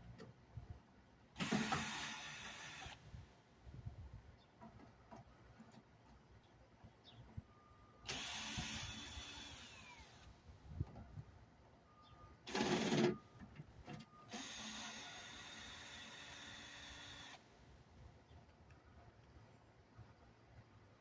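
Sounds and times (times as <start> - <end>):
power drill running: 1.4 - 3.0, 8.1 - 10.3, 12.5 - 13.1, 14.3 - 17.4.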